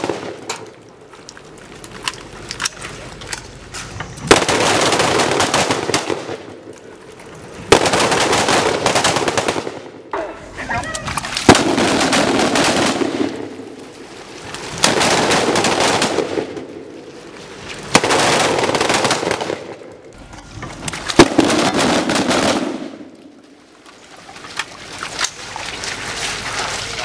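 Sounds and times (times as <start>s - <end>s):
rifle gunfire volleys: 4.3s - 6.5s, 7.7s - 9.9s, 11.4s - 13.6s, 14.8s - 16.7s, 17.9s - 19.8s, 21.2s - 23.1s.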